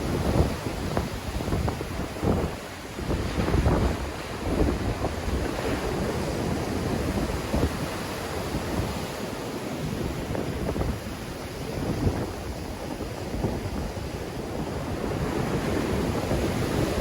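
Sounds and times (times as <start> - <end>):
sea waves breaking on shore: 0.0 - 17.0
wind buffeting microphone: 0.0 - 17.0.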